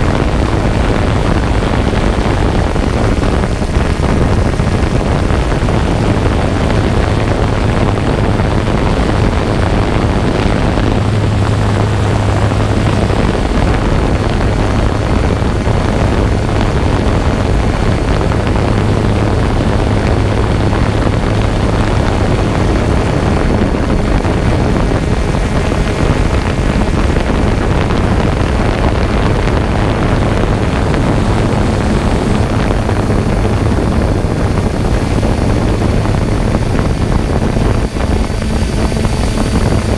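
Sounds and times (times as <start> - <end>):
drone propellers humming: 0.0 - 39.9.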